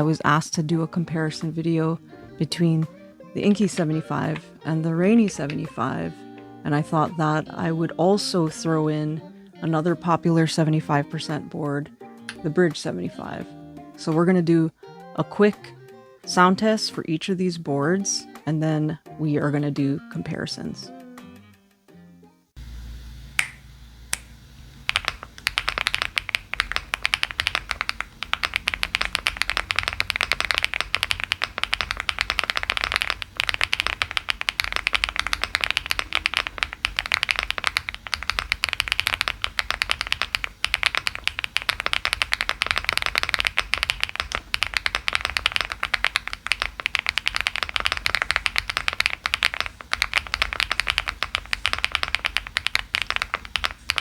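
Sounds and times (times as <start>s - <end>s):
fast typing on mechanical keyboard: 24.9s - 54.0s.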